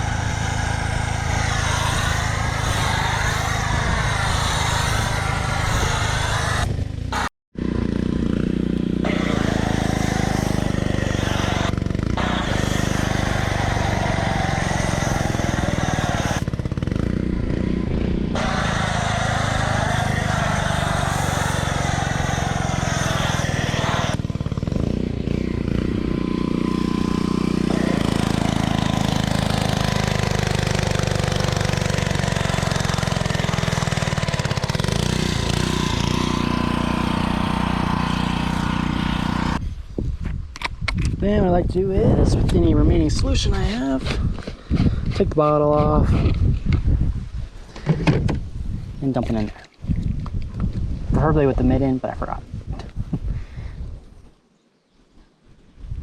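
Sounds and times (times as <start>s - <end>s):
hiss of water spray: 0.0s - 7.3s, 9.0s - 16.5s, 18.4s - 24.4s, 26.5s - 39.6s
pressure washer motor hum: 0.0s - 39.6s.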